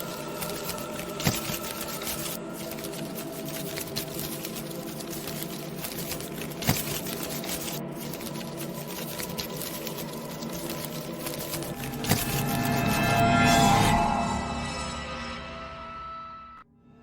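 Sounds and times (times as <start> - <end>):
dense continuous crackle: 0.0 - 13.7.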